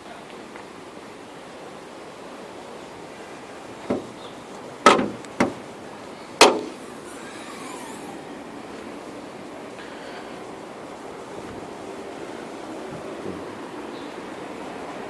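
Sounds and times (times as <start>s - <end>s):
loud metallic clunks: 4.8s - 5.6s, 6.4s - 6.8s.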